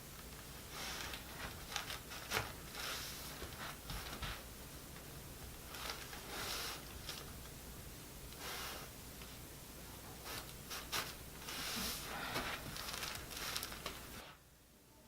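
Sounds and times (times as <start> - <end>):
breathy hisses: 0.6 - 1.3, 6.2 - 7.0, 8.4 - 9.0, 10.2 - 12.7
clothing rustling: 10.2 - 14.4.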